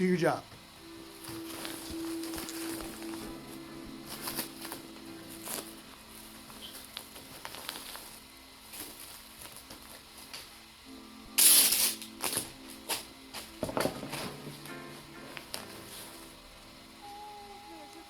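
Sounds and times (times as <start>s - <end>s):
faint background music: 0.0s - 18.0s
clicks and crackling handling noises: 4.0s - 10.6s.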